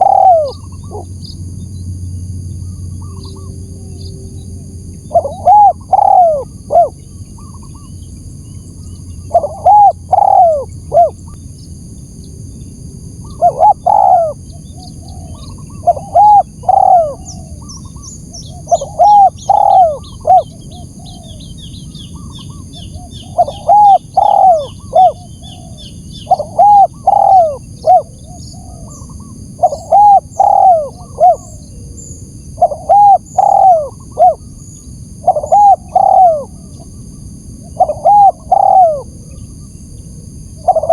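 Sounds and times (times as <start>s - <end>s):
dove cooing: 0.0s - 1.2s, 5.0s - 7.9s, 9.2s - 11.4s, 13.2s - 34.6s, 35.2s - 37.0s, 37.6s - 39.5s, 40.2s - 40.9s
small birds chirping: 0.0s - 4.2s, 4.9s - 40.9s.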